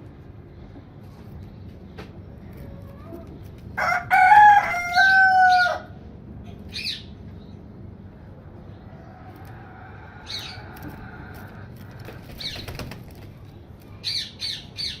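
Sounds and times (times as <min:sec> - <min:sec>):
rooster crowing: 0:03.8 - 0:06.0.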